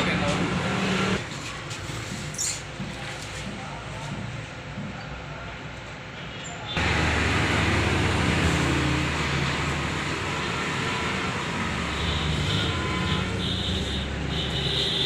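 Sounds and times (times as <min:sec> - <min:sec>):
machine humming: 0:06.8 - 0:13.6.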